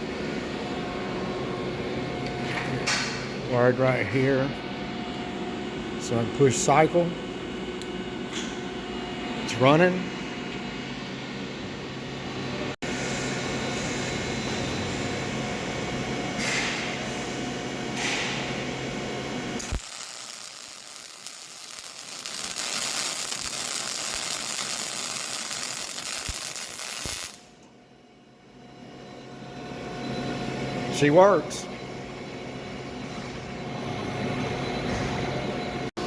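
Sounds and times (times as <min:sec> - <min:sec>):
welder arc crackling: 0:19.6 - 0:27.5.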